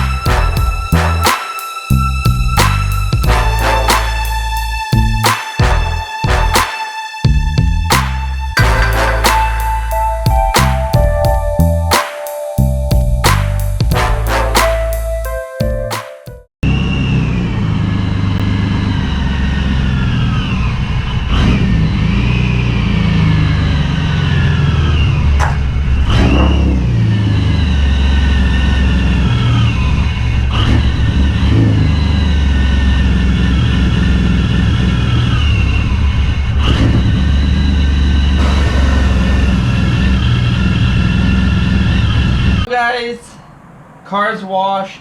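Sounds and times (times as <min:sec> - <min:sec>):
car engine revving: 0:16.9 - 0:42.7.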